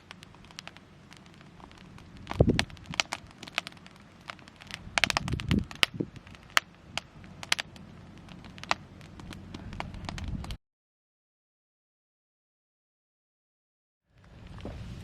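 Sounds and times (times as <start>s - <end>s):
sharp crackles and pops: 0.0s - 10.6s, 14.1s - 15.0s.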